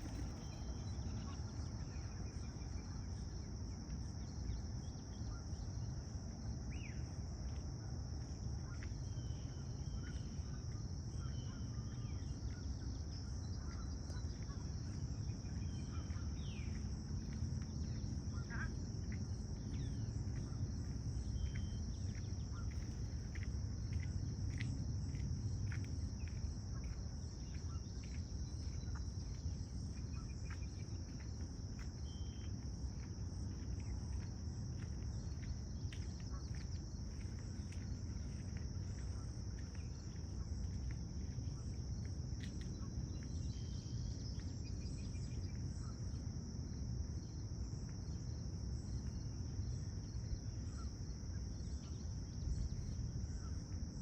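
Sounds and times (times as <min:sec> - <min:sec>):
insects chorus: 0:00.0 - 0:54.0.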